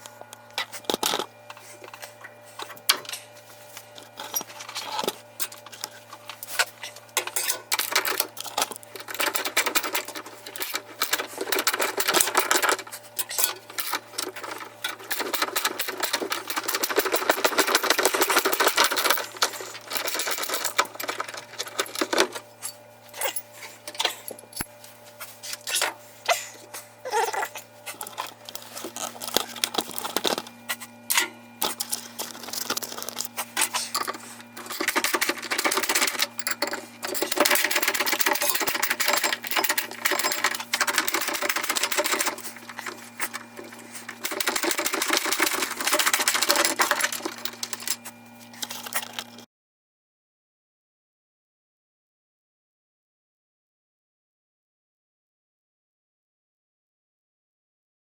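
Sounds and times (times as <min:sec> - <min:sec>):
metallic clicking of hand tools: 0:31.1 - 0:48.1.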